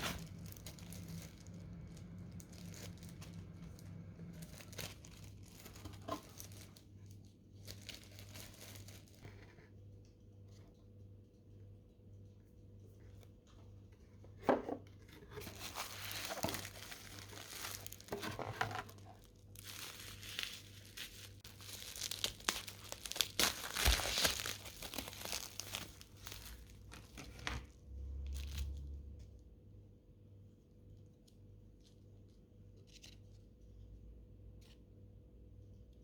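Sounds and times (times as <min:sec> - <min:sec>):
crinkling and tearing by hand: 0:00.0 - 0:09.5, 0:15.0 - 0:29.0.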